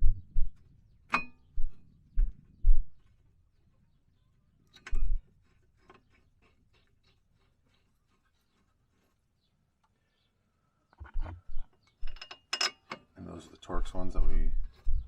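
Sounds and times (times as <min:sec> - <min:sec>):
dull low thumps: 0:00.0 - 0:00.6, 0:01.6 - 0:03.0, 0:13.8 - 0:15.0
metal parts clinking: 0:12.0 - 0:13.0.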